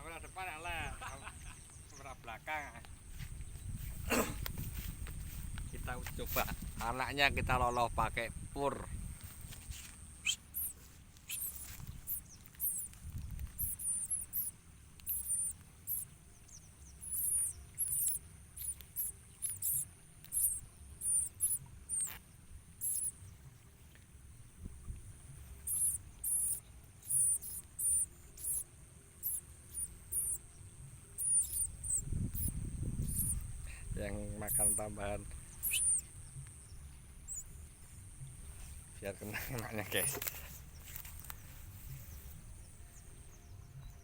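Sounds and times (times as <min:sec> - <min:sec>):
birds giving high squeaky calls: 0:09.5 - 0:22.2, 0:22.8 - 0:23.2, 0:25.6 - 0:38.9, 0:39.5 - 0:43.0.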